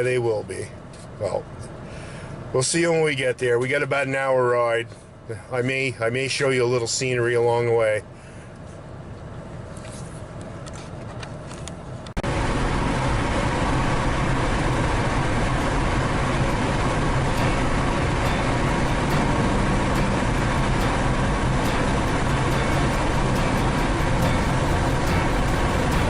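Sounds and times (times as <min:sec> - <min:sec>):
vehicle road and wind noise: 0:00.0 - 0:06.3, 0:07.0 - 0:26.0.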